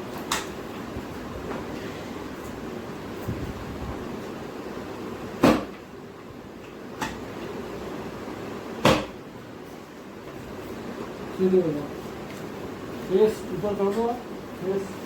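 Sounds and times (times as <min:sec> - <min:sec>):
sharp knocks from knee adjustment: 0:08.8 - 0:09.2.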